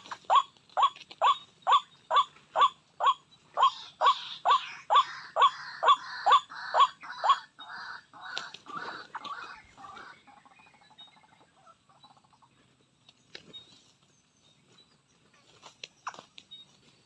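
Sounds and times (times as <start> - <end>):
waterhen calls: 0.0 - 12.3.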